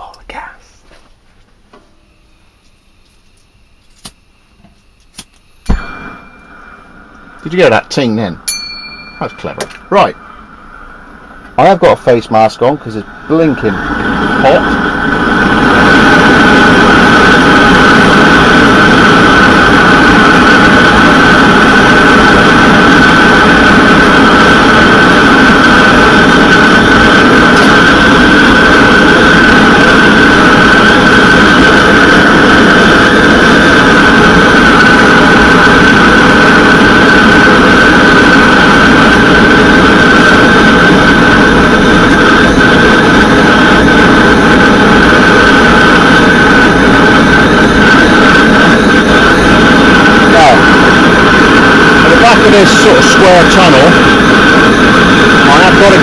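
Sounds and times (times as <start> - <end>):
high whistling tone: 5.6 - 10.6
blowtorch flame rushing: 9.2 - 56.0.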